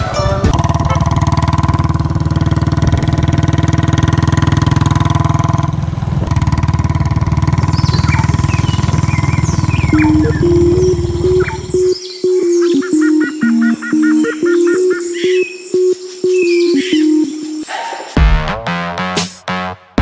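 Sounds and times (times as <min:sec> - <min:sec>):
music track: 0:00.0 - 0:02.0, 0:09.8 - 0:18.2
motorcycle engine thumping: 0:00.0 - 0:11.9
birds chirping: 0:00.0 - 0:18.1.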